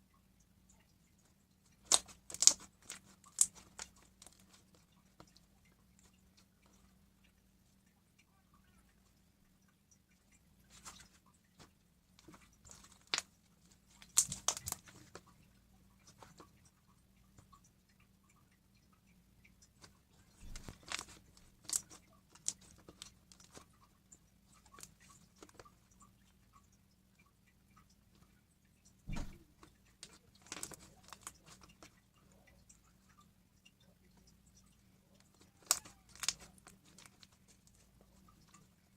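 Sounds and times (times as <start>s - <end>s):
slime crackling and popping: 1.8s - 4.6s, 13.9s - 15.2s, 20.4s - 23.6s, 30.4s - 31.7s, 35.4s - 37.4s.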